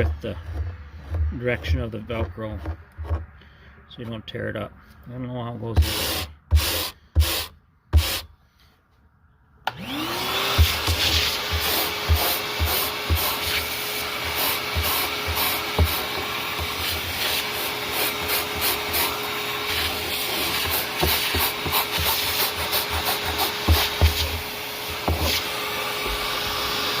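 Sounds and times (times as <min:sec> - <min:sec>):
vacuum cleaner running: 0:05.8 - 0:08.2, 0:09.7 - 0:27.0.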